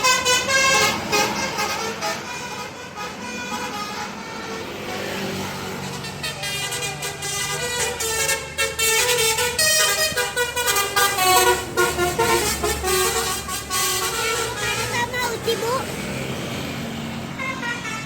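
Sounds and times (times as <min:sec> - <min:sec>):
road traffic: 0:00.0 - 0:18.0
musical air horn tune: 0:06.2 - 0:15.1.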